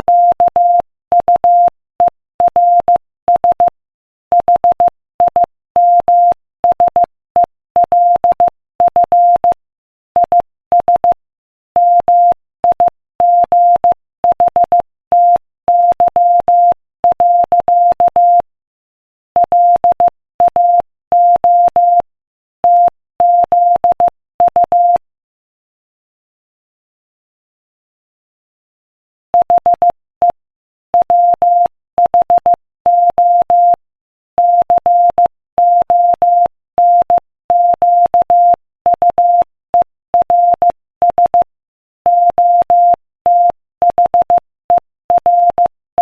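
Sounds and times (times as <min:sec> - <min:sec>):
morse code beeps: 0:04.4 - 0:07.1, 0:11.8 - 0:18.5, 0:19.4 - 0:25.0, 0:29.4 - 0:30.4, 0:31.0 - 0:33.8, 0:34.4 - 0:41.5, 0:42.1 - 0:45.7.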